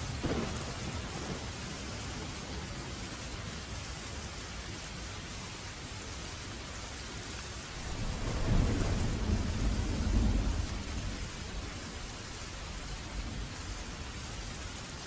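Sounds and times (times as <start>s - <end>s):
thunder rumble: 0.0s - 3.2s, 7.8s - 14.4s
steady rain: 0.0s - 15.0s.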